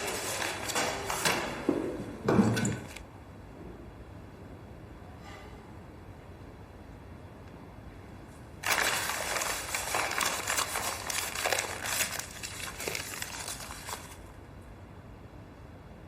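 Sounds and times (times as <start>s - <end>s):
dense crackling rustling noise: 8.6s - 14.3s.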